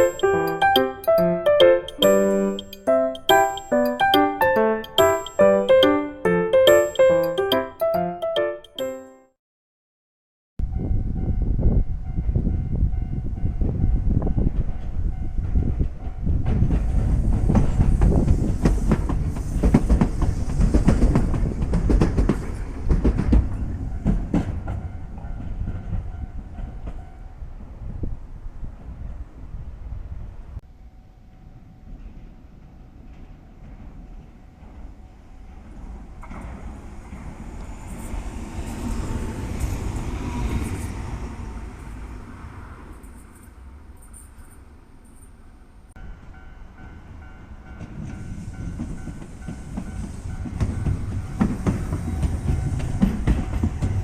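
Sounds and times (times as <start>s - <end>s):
tram wheels rumbling over rail joints: 12.2s - 27.8s, 32.0s - 42.9s, 47.7s - 54.0s.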